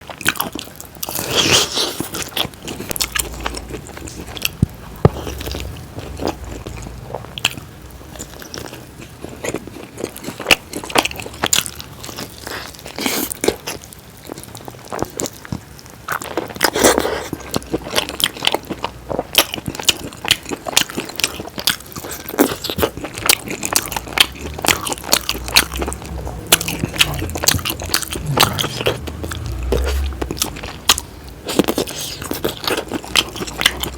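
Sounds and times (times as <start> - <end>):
person chewing food: 0.0 - 33.9
loud bites: 24.6 - 32.5.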